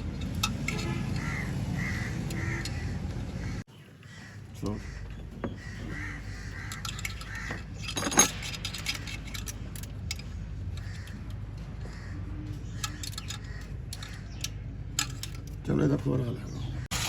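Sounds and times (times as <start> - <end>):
metal tools and parts clinking: 0.0 - 1.3, 6.4 - 11.5, 12.5 - 16.0.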